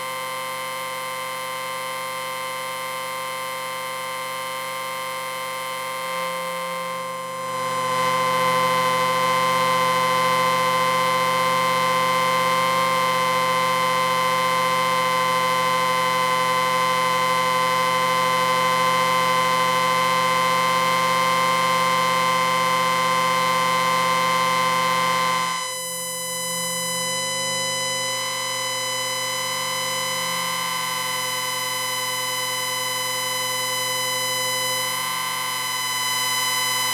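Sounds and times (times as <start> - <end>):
distorted electric buzz: 6.0 - 25.7.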